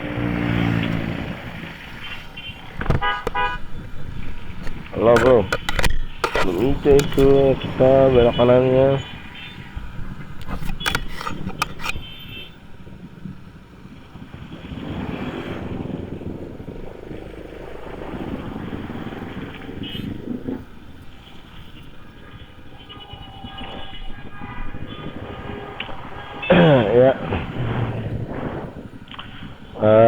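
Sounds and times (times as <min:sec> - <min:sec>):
city traffic: 0:00.0 - 0:30.0
motorcycle engine: 0:00.0 - 0:30.0
sharp knocks: 0:02.6 - 0:08.5.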